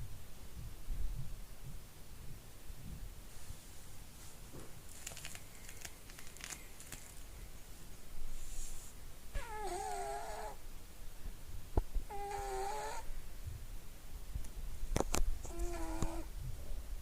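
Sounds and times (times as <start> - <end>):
cat snoring: 9.4 - 10.6, 12.1 - 13.1, 15.4 - 16.3.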